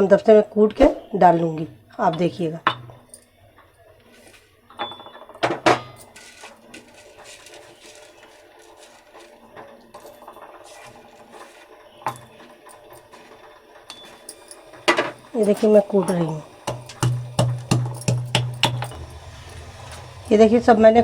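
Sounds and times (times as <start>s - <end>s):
metal mortar and pestle crushing spices: 4.1s - 20.4s.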